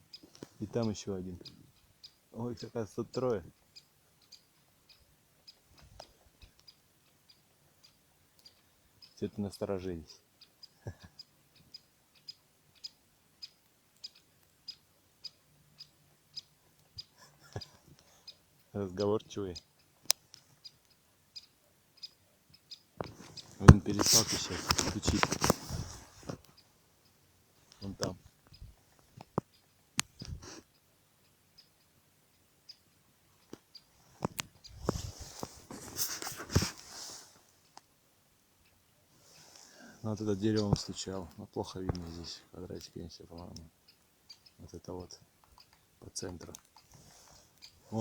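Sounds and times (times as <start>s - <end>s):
rustle: 0.0s - 48.0s
woodpecker sharp call notes: 39.4s - 45.8s.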